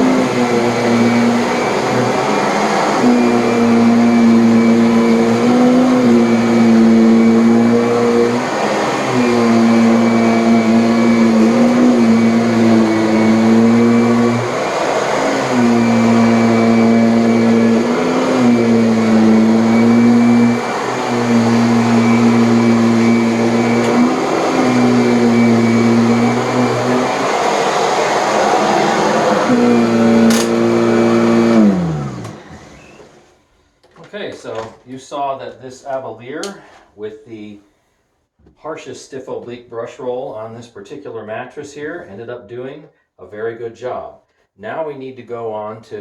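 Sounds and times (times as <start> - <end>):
vacuum cleaner motor humming: 0.0 - 33.3.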